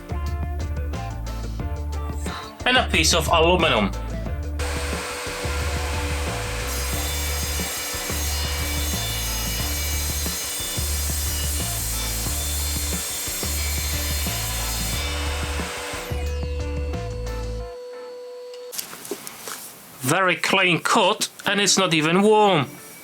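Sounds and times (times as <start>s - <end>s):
saw cutting through metal: 4.6s - 17.6s
mitre saw whining: 4.6s - 18.7s.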